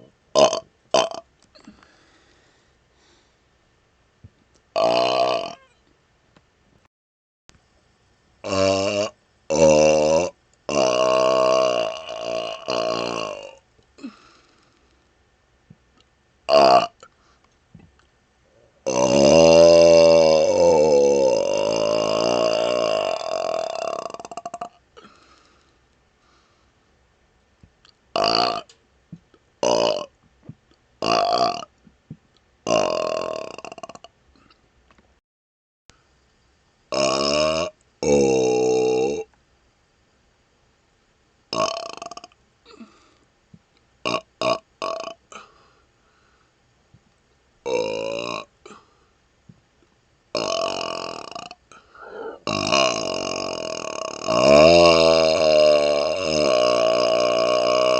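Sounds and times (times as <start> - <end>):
man burping: 0.0 - 1.9, 4.8 - 5.7, 8.4 - 14.4, 16.5 - 17.1, 18.9 - 25.3, 28.2 - 28.7, 29.6 - 30.1, 31.0 - 31.7, 32.7 - 34.6, 36.9 - 39.3, 41.5 - 43.1, 44.1 - 45.6, 47.7 - 48.9, 50.4 - 57.9.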